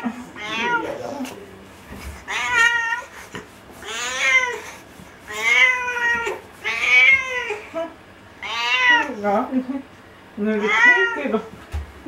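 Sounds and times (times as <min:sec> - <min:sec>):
cat meowing loudly: 0:00.4 - 0:01.1, 0:02.3 - 0:03.0, 0:05.3 - 0:07.6, 0:08.4 - 0:09.2, 0:10.6 - 0:11.3.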